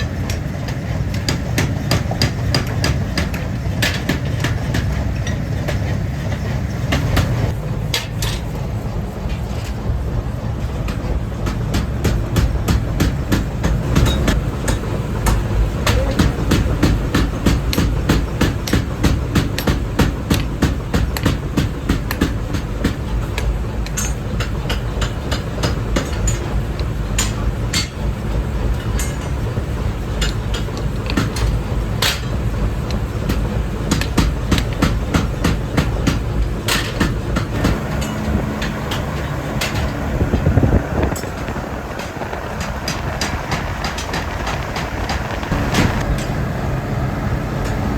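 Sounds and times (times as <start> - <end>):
low machine rumble: 0.0 - 47.9
hammer strikes on iron: 1.1 - 5.0, 10.9 - 28.0, 30.2 - 40.0.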